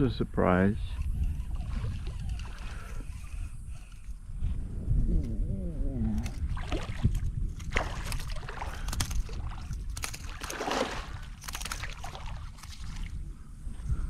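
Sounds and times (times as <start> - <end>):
steady low rumble: 0.0 - 14.0
shallow water splashing: 6.5 - 13.2.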